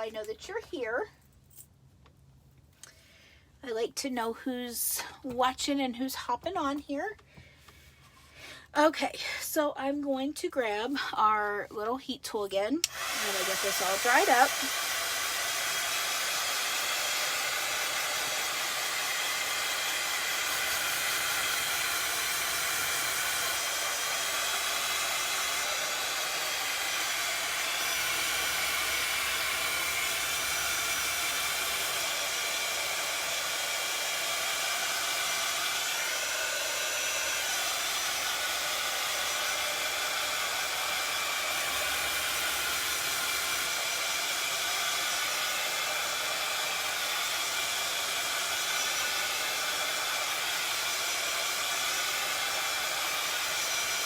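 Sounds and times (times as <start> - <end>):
heat tool blowing hiss: 12.8 - 54.0.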